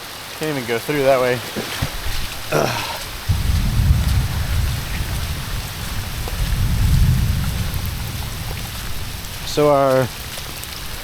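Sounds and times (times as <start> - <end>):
heavy rain falling: 0.0 - 11.0
deep low rumble: 3.3 - 11.0.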